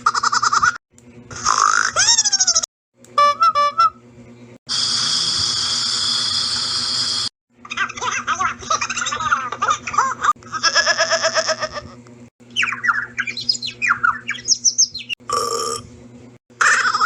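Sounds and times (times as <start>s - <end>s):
fast pulsing buzzy trill: 4.7s - 7.3s
bird-like chirping and squawking: 12.4s - 15.2s.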